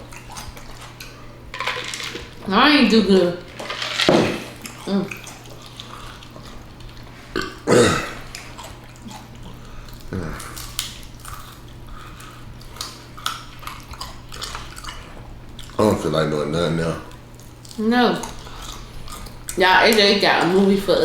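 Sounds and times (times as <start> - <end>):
person burping: 7.3 - 8.3.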